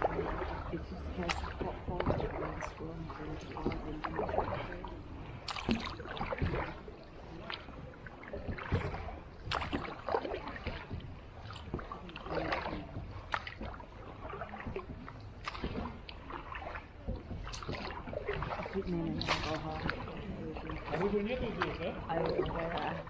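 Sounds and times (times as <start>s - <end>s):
low rumble: 0.0s - 23.0s
paddle splashes and knocks: 0.0s - 23.0s.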